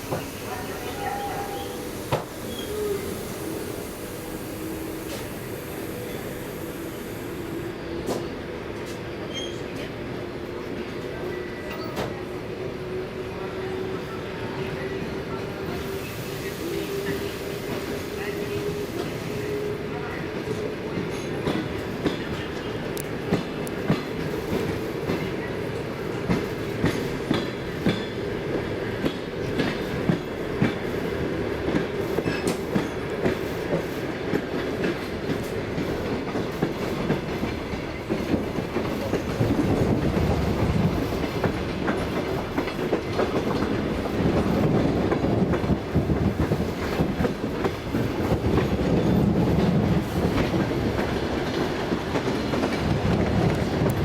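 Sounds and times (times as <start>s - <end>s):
train wheels rolling on rails: 0.0s - 12.3s, 12.9s - 54.0s
rail joint clacks: 26.1s - 28.2s, 31.7s - 54.0s.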